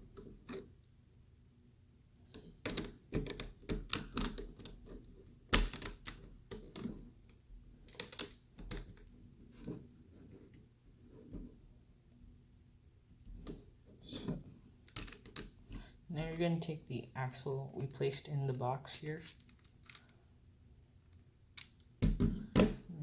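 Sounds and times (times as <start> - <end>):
plastic toy bricks clicking: 7.9 - 8.9, 14.9 - 15.5, 19.2 - 20.1.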